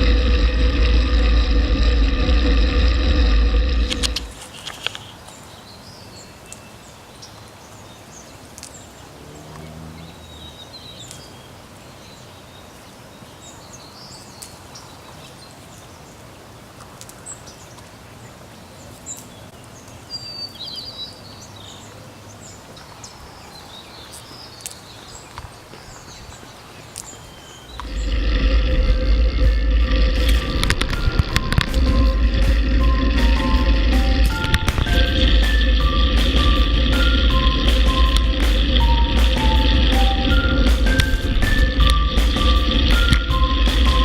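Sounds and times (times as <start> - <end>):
brief low hum: 0.0 - 4.4, 27.8 - 44.0
bird chirps: 3.8 - 16.0, 19.1 - 28.2.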